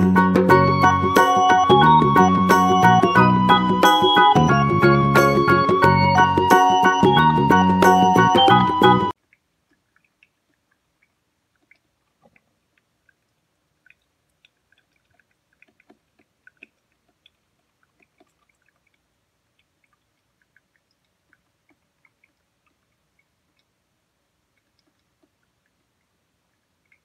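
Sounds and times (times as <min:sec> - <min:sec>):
faint small clicks and ticks: 0:09.1 - 0:23.8, 0:24.4 - 0:27.0.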